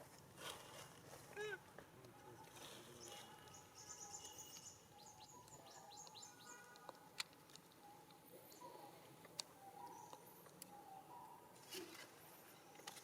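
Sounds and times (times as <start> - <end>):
faint bird chirping: 2.1 - 7.1, 7.7 - 13.0.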